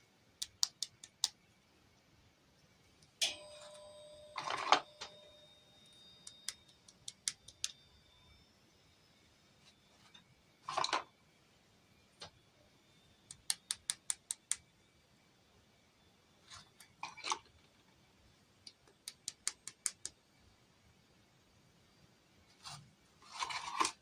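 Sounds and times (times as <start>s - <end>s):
rustling scrapes of toy pieces: 22.6s - 24.0s.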